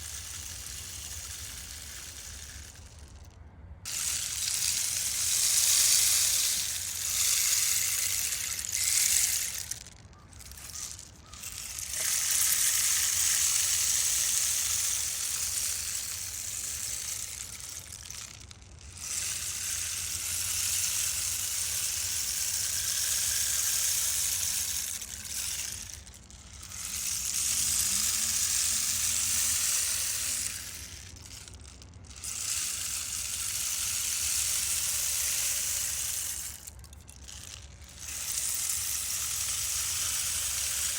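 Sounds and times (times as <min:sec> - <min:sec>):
rainstick pellets pattering: 0:00.0 - 0:40.9.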